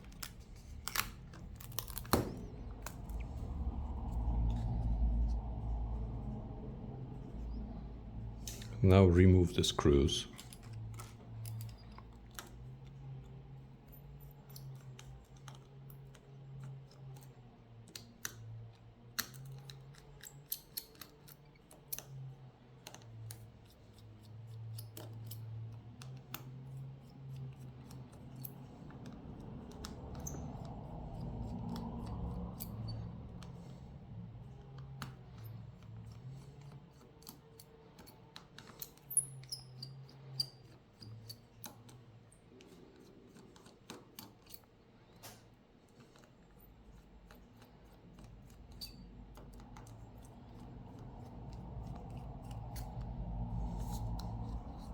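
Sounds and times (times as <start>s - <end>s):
rustling handling: 0.0s - 6.3s
low hum: 0.0s - 11.3s, 48.5s - 54.9s.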